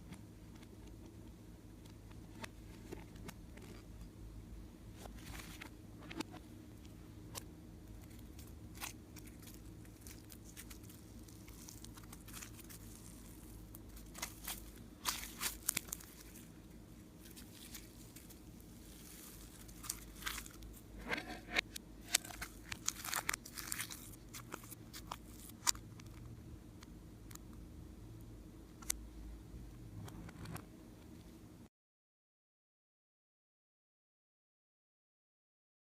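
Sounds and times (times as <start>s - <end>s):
steady low hum: 0.0s - 31.7s
slime clicking and crackling: 7.4s - 16.6s, 17.2s - 20.8s, 22.1s - 26.2s.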